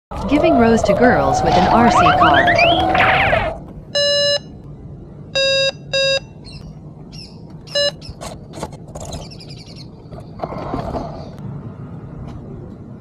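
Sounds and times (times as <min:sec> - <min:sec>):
high chirping sounds: 0:01.4 - 0:03.6
loud electronic beeps: 0:01.6 - 0:04.5, 0:07.7 - 0:08.0.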